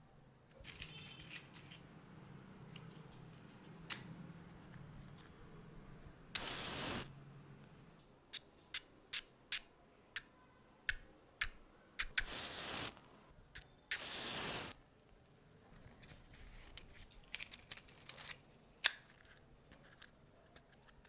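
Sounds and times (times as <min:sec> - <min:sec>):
matches scraping on matchbox: 0:00.6 - 0:05.4, 0:06.4 - 0:07.1, 0:10.9 - 0:14.8, 0:15.7 - 0:21.0
small sharp clicks: 0:10.9 - 0:14.0.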